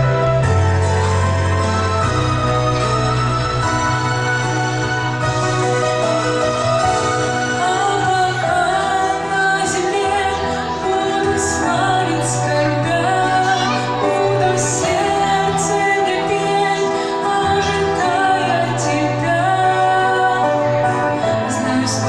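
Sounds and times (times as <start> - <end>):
sustained bass notes: 0.0 - 22.0
woman singing: 7.4 - 22.0.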